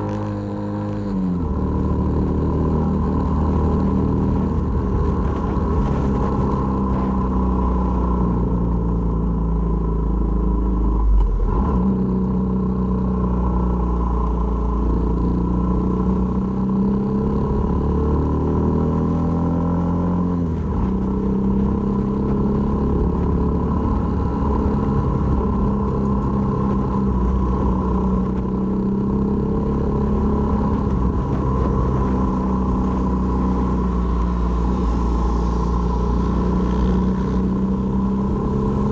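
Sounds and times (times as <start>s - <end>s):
motorcycle engine running: 20.3s - 38.9s.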